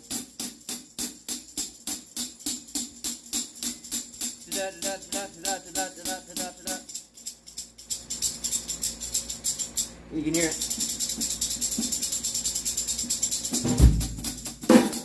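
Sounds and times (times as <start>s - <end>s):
tambourine jingles shaken: 0.0s - 15.0s.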